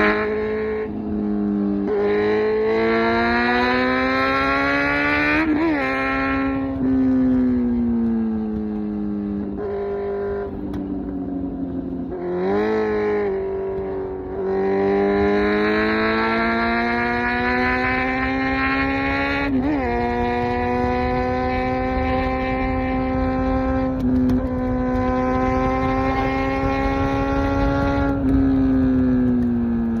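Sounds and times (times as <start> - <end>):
motorcycle engine accelerating: 0.0 - 30.0
gear change: 13.7 - 30.0.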